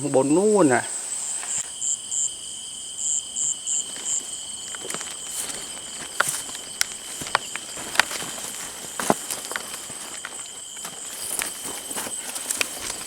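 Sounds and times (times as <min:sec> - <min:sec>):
insect chirps: 0:00.0 - 0:13.0
night insects trilling: 0:00.0 - 0:13.0
footsteps: 0:03.6 - 0:13.0.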